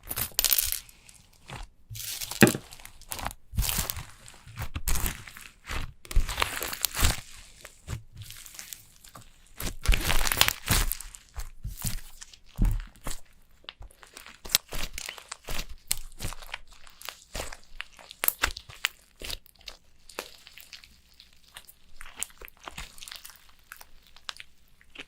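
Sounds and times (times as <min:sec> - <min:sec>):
slime sticky clicks and crackles: 0:13.0 - 0:19.5.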